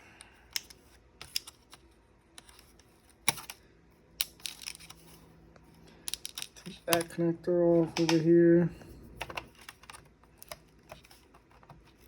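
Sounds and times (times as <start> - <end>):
plastic laptop parts clicking: 0.5 - 3.6, 4.2 - 5.1, 6.0 - 7.1, 9.2 - 12.0.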